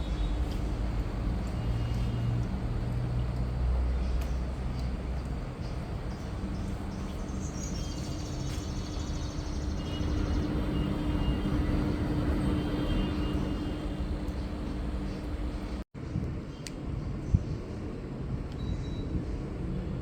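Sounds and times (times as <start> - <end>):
compressor hum: 6.8 - 15.8
condenser fan whoosh: 8.9 - 15.8.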